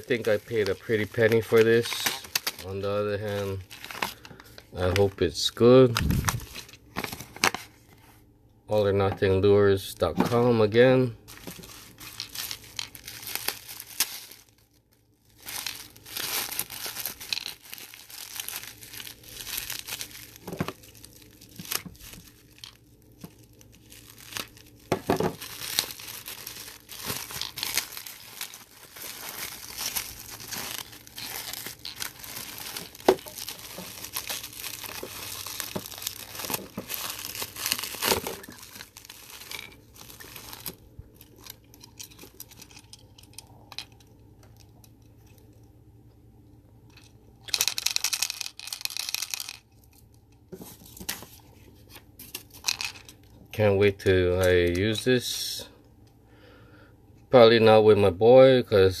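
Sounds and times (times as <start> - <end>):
packaging crinkling and tearing: 0.0 - 7.9, 11.2 - 43.6.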